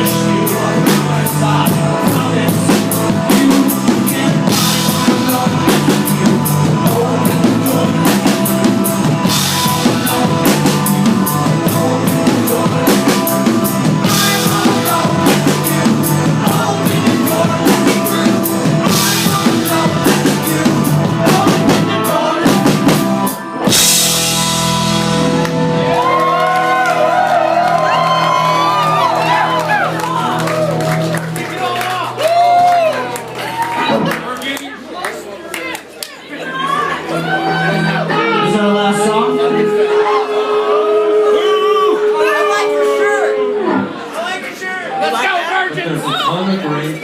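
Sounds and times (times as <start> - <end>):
rock band playing live: 0.0 - 34.8, 37.0 - 44.2
crowd whooping: 24.9 - 34.8, 36.3 - 45.3.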